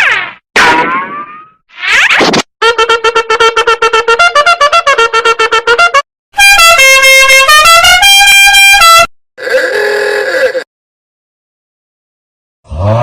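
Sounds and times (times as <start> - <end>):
brassy horn tune: 2.6 - 9.1.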